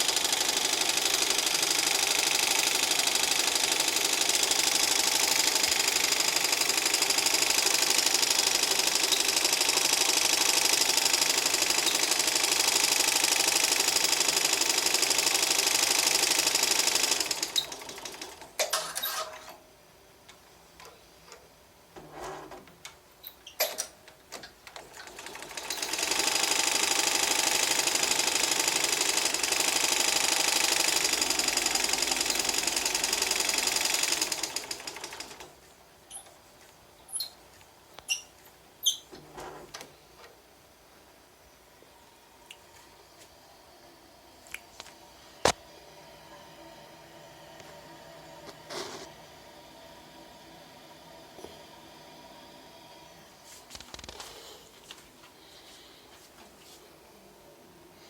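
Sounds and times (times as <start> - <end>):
embroidery machine stitching: 0.0 - 19.6, 23.6 - 36.2.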